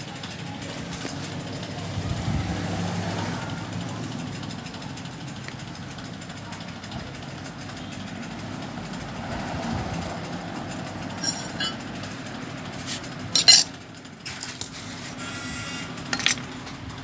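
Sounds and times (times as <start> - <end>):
metal tools clinking: 11.1 - 12.1, 12.9 - 15.0, 16.1 - 16.9.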